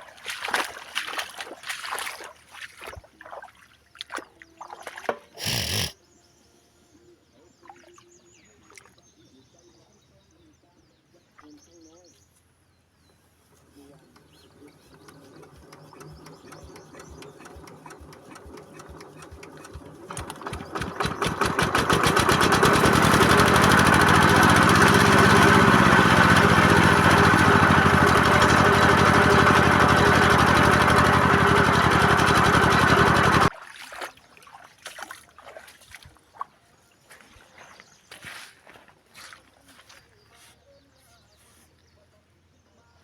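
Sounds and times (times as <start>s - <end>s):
small engine running: 5.4s - 5.9s, 13.8s - 33.5s.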